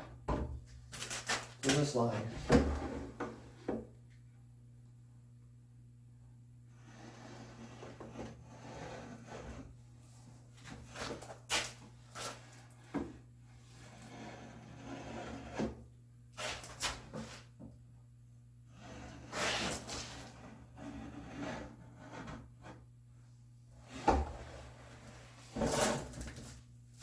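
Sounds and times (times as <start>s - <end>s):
tool scratching wood: 13.9s - 15.8s.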